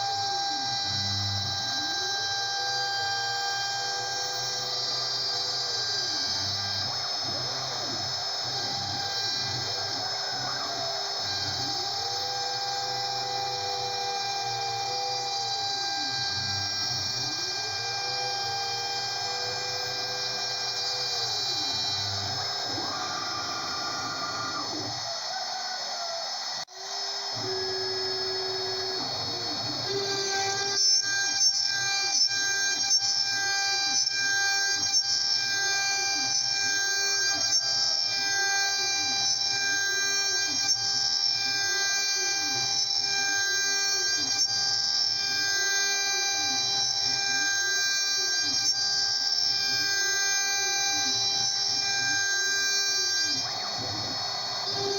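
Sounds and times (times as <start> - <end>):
stepper motors rising tone: 0.0 - 25.6
router spindle whine: 0.0 - 54.9.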